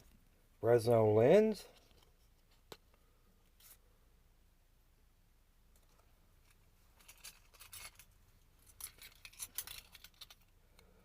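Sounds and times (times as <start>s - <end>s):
clicks and clinks of gear: 7.0s - 10.5s.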